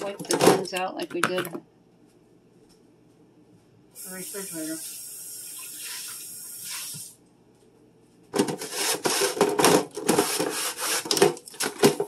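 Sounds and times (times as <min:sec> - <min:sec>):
tap water running: 0:04.0 - 0:07.2
scrubbing plastic containers: 0:08.4 - 0:12.0.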